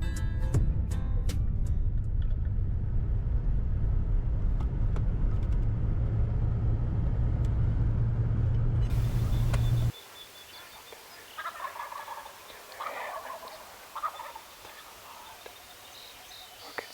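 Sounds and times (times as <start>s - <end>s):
constant low hum: 0.0s - 10.0s
vehicle engine rumble: 0.5s - 10.1s.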